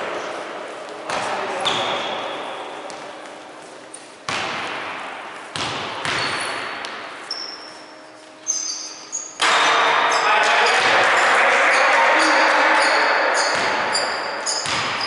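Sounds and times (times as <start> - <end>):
sharp ringing impacts in hall: 0.0 - 15.0
sneaker squeaks on court: 1.6 - 3.0, 6.0 - 10.8, 12.3 - 15.0.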